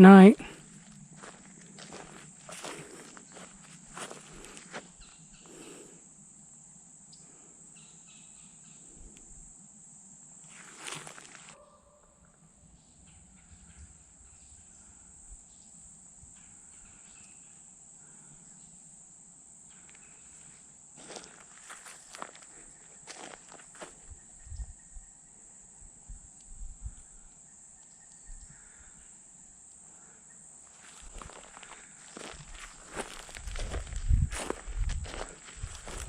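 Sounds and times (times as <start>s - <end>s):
high-pitched insect chorus: 0.0s - 36.0s
footsteps or rustles: 0.4s - 5.0s, 10.5s - 11.6s, 30.8s - 36.0s.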